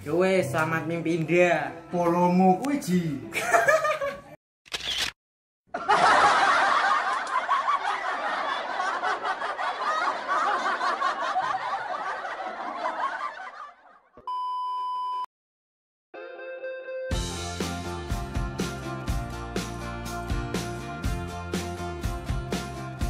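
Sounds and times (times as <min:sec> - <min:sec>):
laugh track: 0:03.3 - 0:04.4, 0:05.7 - 0:14.2.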